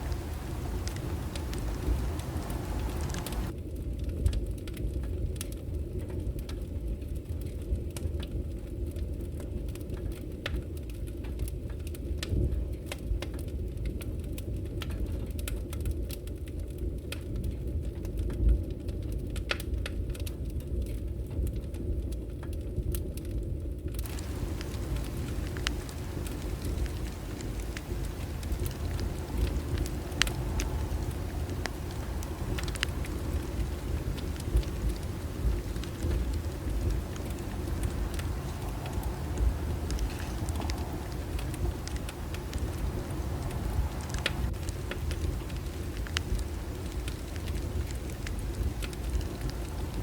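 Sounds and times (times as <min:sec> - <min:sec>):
fire low rumble: 0:00.0 - 0:03.6, 0:24.0 - 0:50.0
bonfire wood crackling and popping: 0:00.0 - 0:22.6, 0:23.9 - 0:50.0.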